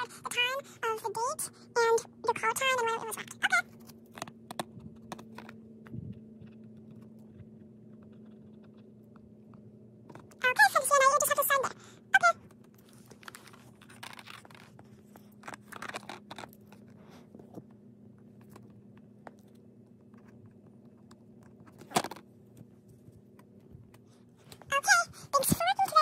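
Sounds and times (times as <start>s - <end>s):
faint steady low hum: 0.0s - 26.0s
small objects scraping and rustling: 12.8s - 17.6s.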